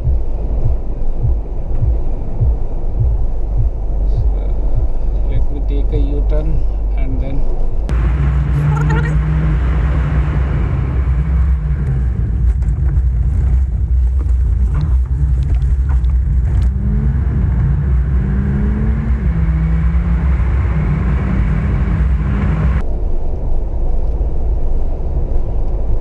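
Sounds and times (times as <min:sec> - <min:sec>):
road and engine rumble in car cabin: 0:07.9 - 0:22.8.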